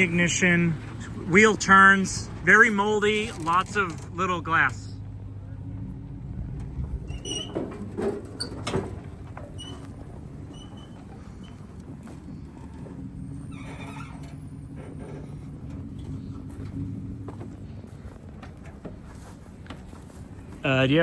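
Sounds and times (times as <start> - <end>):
vehicle engine idling: 0.0 - 21.0
squeaks and knocks: 6.9 - 16.4.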